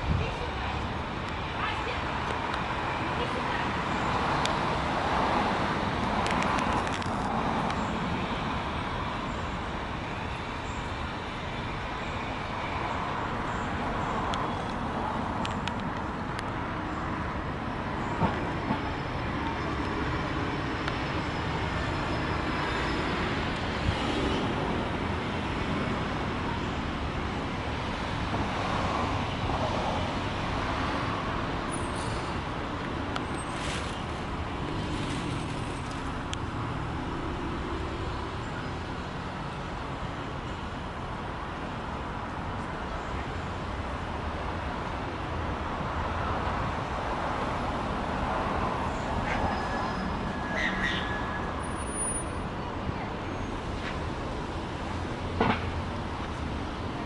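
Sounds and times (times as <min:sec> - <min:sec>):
road traffic hum: 0:00.0 - 0:57.0.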